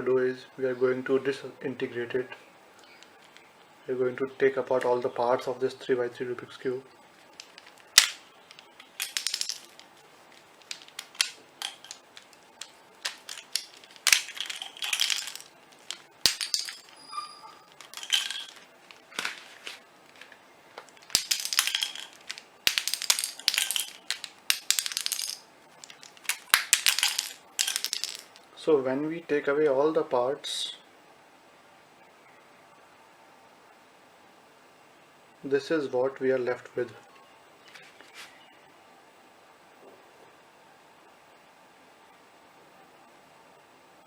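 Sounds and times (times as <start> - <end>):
plastic pieces clicking and clattering: 7.2 - 28.4.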